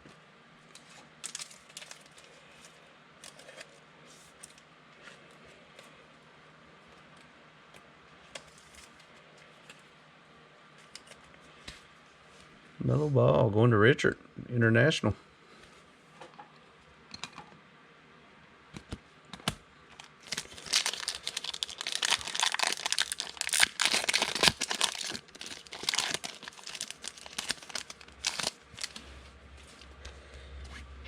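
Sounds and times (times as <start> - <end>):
wrapper crinkling and tearing: 20.0 - 30.0.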